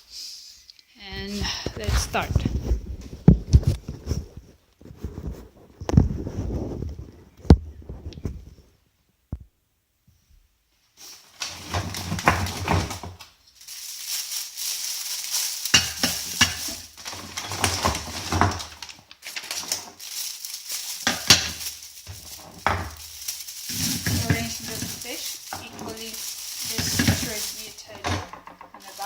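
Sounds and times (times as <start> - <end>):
plastic bag crinkling: 11.0 - 29.0.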